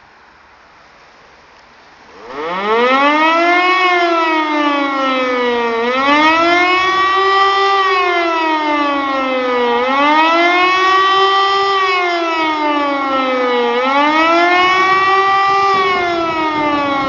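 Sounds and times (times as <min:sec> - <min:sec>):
faint background noise: 0:00.0 - 0:17.0
rising and falling siren wail: 0:02.1 - 0:17.0.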